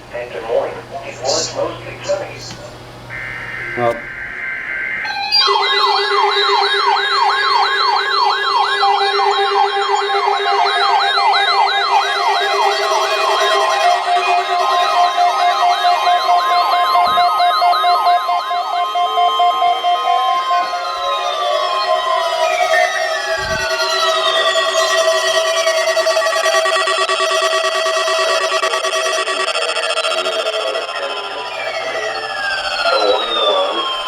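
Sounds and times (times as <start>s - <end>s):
steady siren tones: 0.0s - 34.0s
electronic yelp siren: 3.0s - 34.0s.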